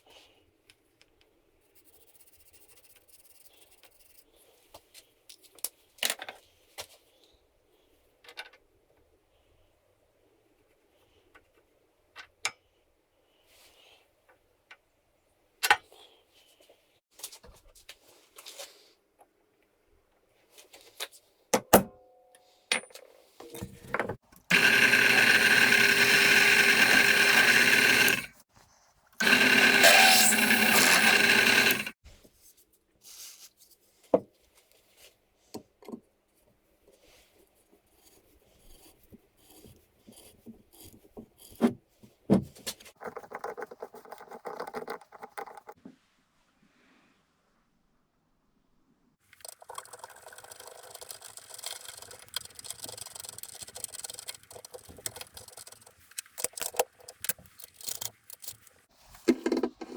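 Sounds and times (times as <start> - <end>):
drill press whining: 24.5 - 28.3, 29.2 - 32.0.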